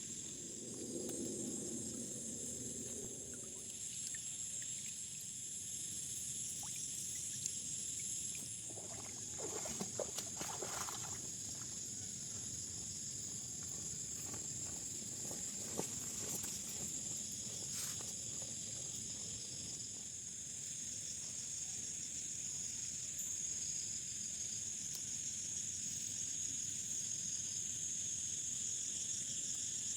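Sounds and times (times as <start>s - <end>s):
night insects chorus: 0.0s - 29.9s
water splashing in shallows: 8.3s - 11.7s.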